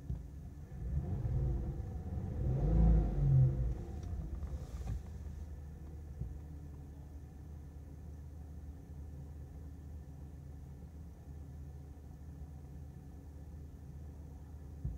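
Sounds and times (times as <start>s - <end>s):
car engine revving and idling: 0.0s - 7.7s.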